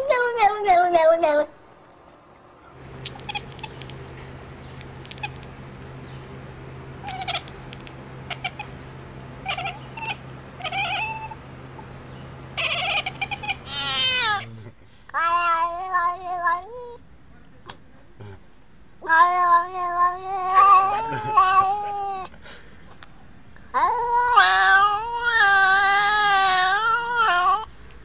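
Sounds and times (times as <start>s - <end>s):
steady low hum: 1.5s - 15.0s
cat meowing: 2.8s - 8.8s, 9.4s - 11.4s, 12.5s - 14.5s.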